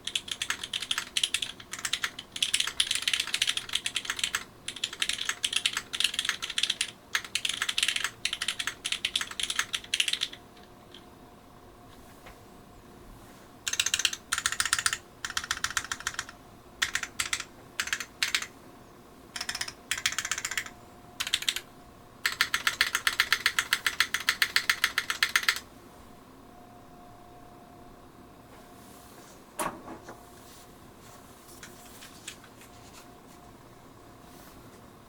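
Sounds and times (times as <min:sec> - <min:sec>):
mechanical keyboard typing: 0:00.0 - 0:11.0, 0:13.7 - 0:18.5, 0:19.4 - 0:21.6, 0:22.2 - 0:25.6.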